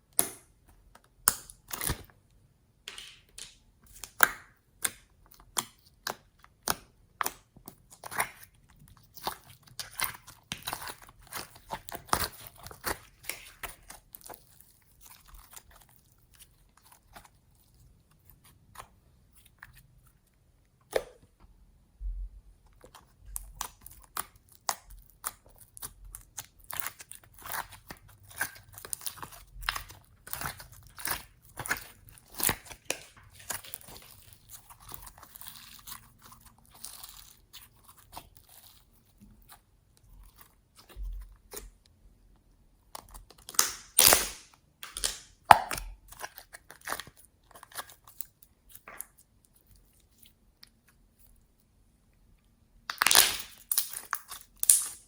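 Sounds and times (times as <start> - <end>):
slime clicking and popping by hand: 0.1 - 2.1, 2.9 - 8.5, 43.0 - 47.1, 52.8 - 55.0.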